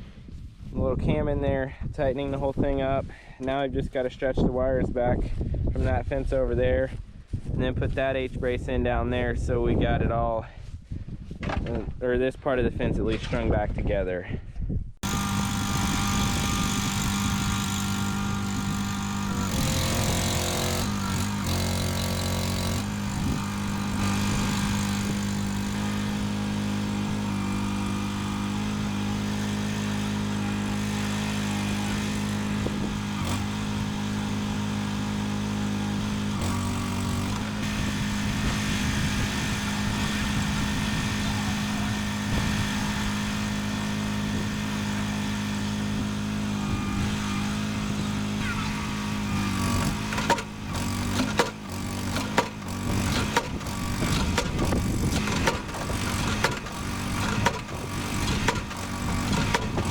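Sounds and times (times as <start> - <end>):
vehicle engine running: 15.0 - 59.9.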